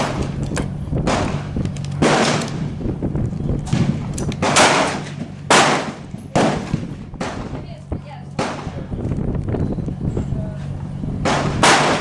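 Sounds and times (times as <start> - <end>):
rifle shots echoing: 2.0 - 2.6, 3.7 - 7.5, 11.2 - 12.0.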